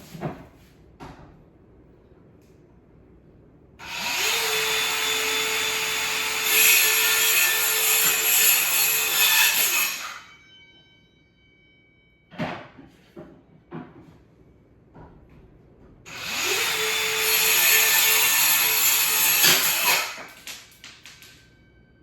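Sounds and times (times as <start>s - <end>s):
chainsaw cutting wood: 3.8s - 10.1s, 16.1s - 20.3s.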